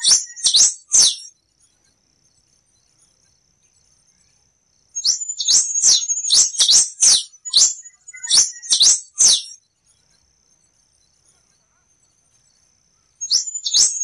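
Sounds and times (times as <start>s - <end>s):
finch singing sharp notes: 0.0s - 1.3s, 5.0s - 9.6s, 13.2s - 14.0s
faint steady high tone: 0.0s - 14.0s.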